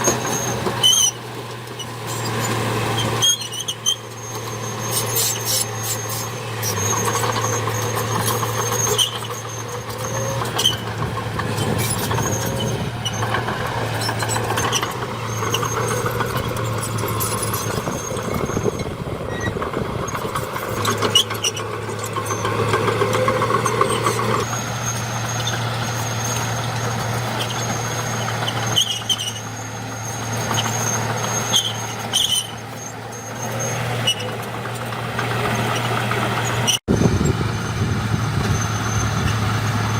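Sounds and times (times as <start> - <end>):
diesel engine drone: 0.0 - 39.9
high thin squeal: 2.0 - 10.9.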